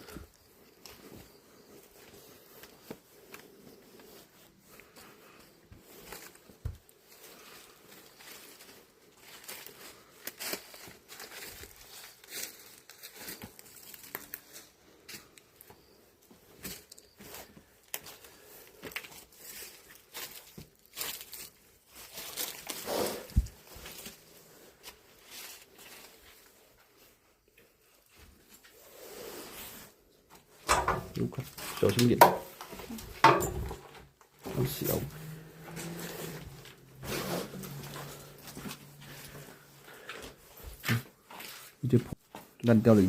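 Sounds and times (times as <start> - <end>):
footsteps crunching on broken glass: 4.8 - 22.8, 31.0 - 42.6.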